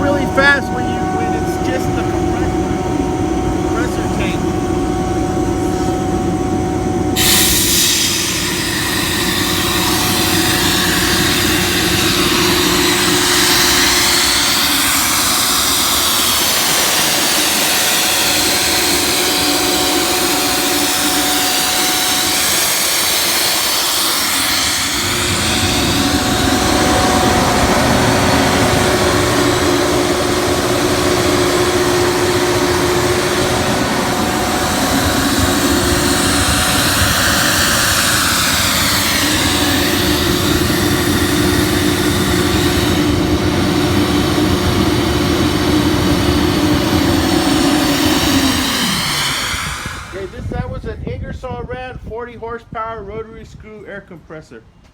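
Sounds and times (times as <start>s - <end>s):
air compressor humming: 0.0s - 50.6s
rush of hissing air: 7.0s - 50.7s.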